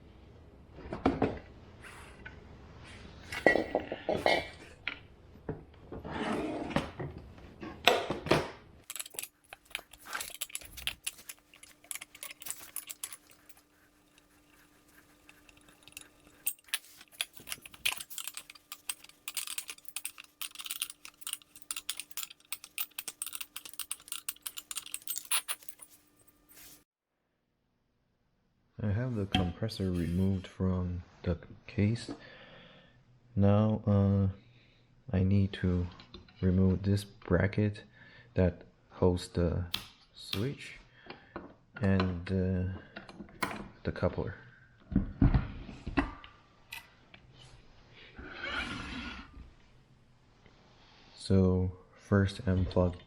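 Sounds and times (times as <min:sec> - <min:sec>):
metal parts knocking and clunking: 0:07.9 - 0:26.8.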